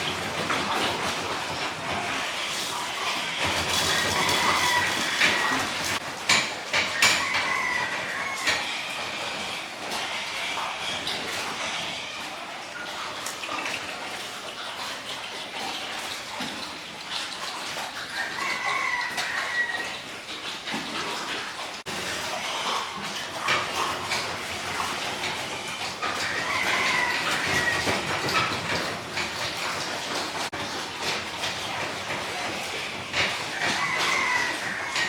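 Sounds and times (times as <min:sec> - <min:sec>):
rooster crowing: 0:03.4 - 0:06.0, 0:06.9 - 0:08.9, 0:18.1 - 0:20.0, 0:26.1 - 0:28.2, 0:33.5 - 0:35.0.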